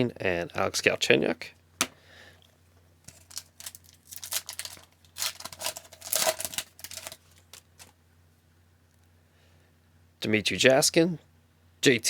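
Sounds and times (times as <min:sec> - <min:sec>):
card pack wrapper tearing and crinkling: 0:03.1 - 0:07.9
cards being handled: 0:03.1 - 0:07.9.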